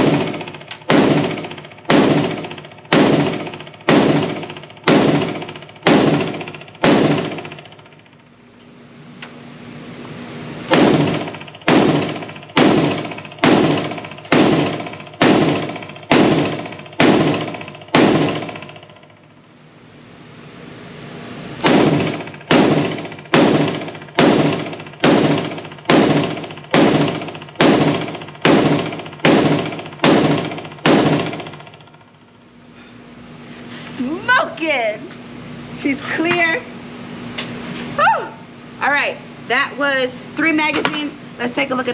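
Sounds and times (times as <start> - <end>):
rifle shots with echo: 0.0 - 7.6, 10.7 - 18.8, 21.6 - 31.7.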